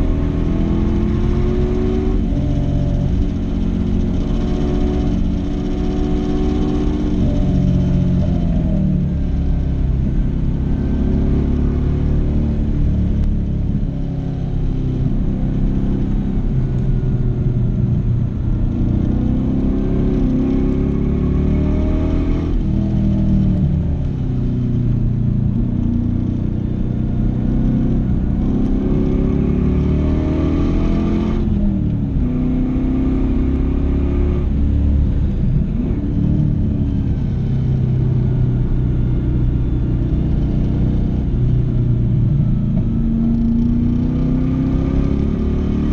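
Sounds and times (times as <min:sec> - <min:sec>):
racing car engine revving: 0:42.5 - 0:45.9.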